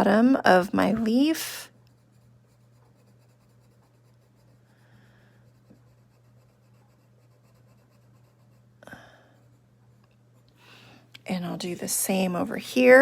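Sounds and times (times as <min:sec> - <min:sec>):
steady low hum: 0:00.0 - 0:13.0
pencil scratching on paper: 0:01.9 - 0:04.8, 0:05.4 - 0:08.7.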